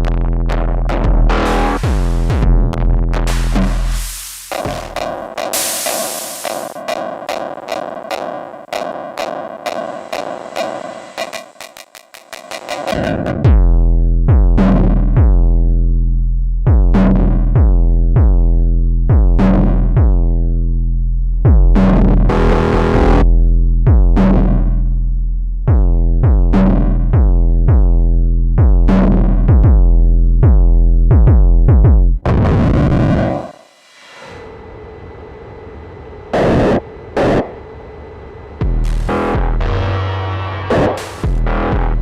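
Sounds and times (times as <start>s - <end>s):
deep sustained bass: 0.0s - 4.2s, 13.5s - 32.2s, 38.6s - 42.0s
noise burst: 1.3s - 13.3s, 32.2s - 42.0s
noise swell: 3.2s - 7.1s, 7.7s - 13.0s, 32.3s - 41.6s.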